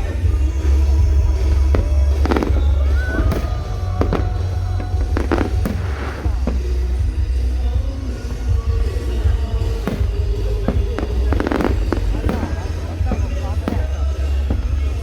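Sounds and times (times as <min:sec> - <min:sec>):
fireworks bangs: 0:00.0 - 0:15.0
music with heavy bass: 0:00.0 - 0:15.0.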